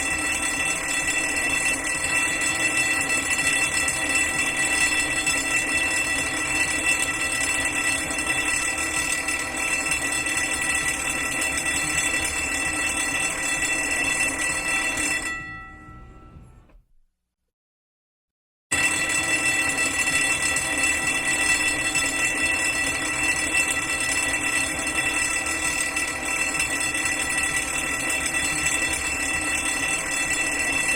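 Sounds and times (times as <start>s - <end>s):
fire alarm bell ringing: 0.0s - 16.9s, 18.7s - 30.9s.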